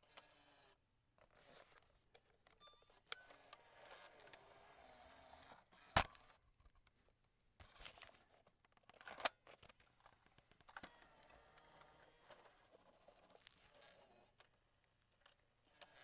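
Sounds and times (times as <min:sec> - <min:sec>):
cassette deck eject clacks: 0:05.9 - 0:06.3.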